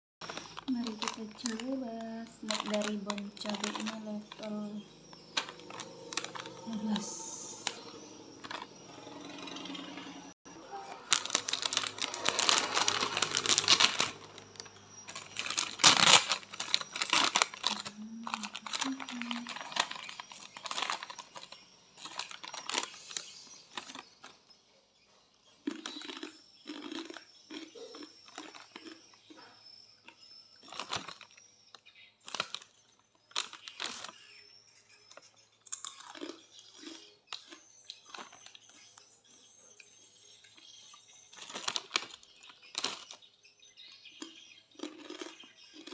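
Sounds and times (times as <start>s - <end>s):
plastic snack packet crinkling: 0.2s - 8.8s, 10.6s - 24.4s, 25.6s - 29.0s, 30.6s - 34.4s, 35.0s - 39.0s, 40.6s - 43.3s, 44.0s - 45.9s
crunchy snack being chewed: 0.2s - 9.7s, 10.7s - 24.5s, 25.4s - 43.3s, 44.0s - 45.9s.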